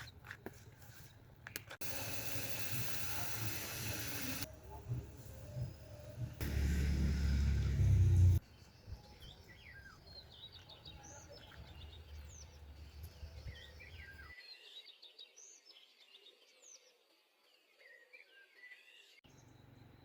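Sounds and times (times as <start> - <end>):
birds chirping: 1.9 - 14.3
loud low rumble: 6.1 - 8.4.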